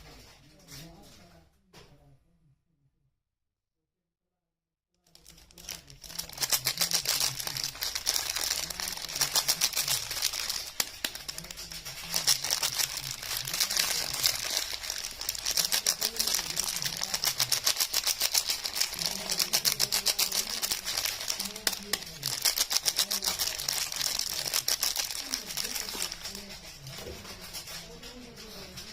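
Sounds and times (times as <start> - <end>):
wrapper crinkling: 5.1 - 26.8.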